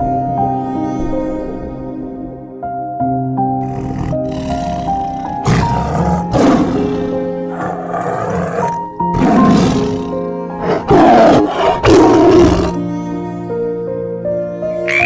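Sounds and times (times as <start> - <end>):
soft background music: 0.0 - 15.0
large animal giving rough calls: 3.6 - 12.8.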